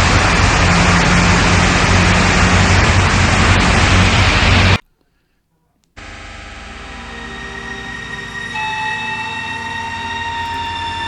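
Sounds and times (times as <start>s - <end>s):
steady rain: 0.0s - 4.8s
quiet drone with held tones: 0.0s - 11.0s
low hum: 6.0s - 11.0s.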